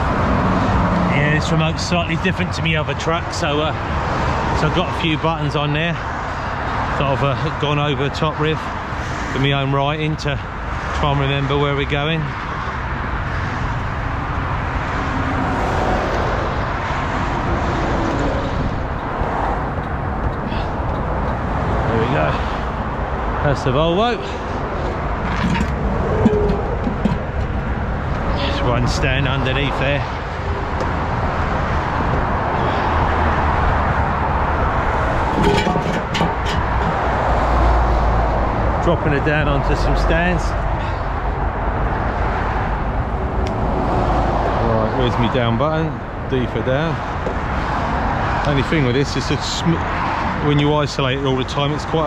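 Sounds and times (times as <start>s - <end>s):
heavy vehicle engine rumble: 0.0s - 52.0s
motorway traffic roar: 0.0s - 52.0s
clatter of sharp knocks: 25.2s - 27.7s, 35.3s - 37.2s.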